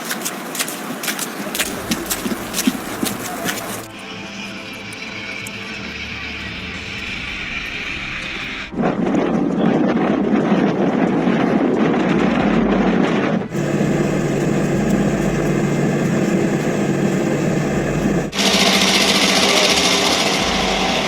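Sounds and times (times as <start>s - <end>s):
steady engine noise: 1.1s - 3.9s, 13.5s - 21.0s.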